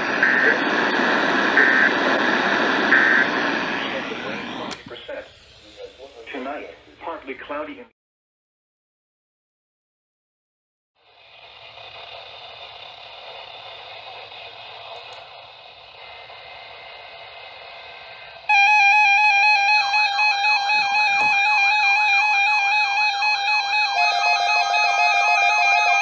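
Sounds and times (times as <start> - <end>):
radio receiver hiss: 0.0 - 7.8, 11.4 - 26.0
faint tones: 18.4 - 26.0.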